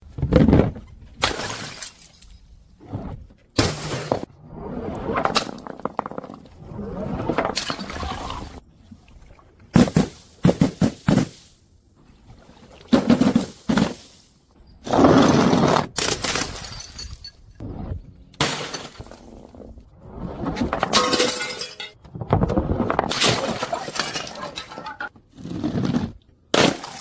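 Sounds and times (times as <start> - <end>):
glass bottles smashing: 1.2 - 2.4, 16.0 - 17.6, 18.4 - 19.4, 20.8 - 22.0, 23.1 - 25.1.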